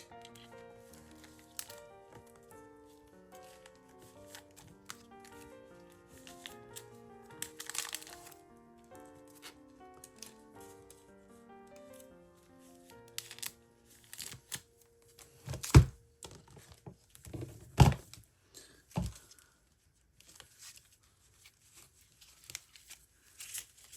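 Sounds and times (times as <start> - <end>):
packaging rustling and tearing: 0.0 - 8.4, 12.8 - 18.2, 20.2 - 23.9.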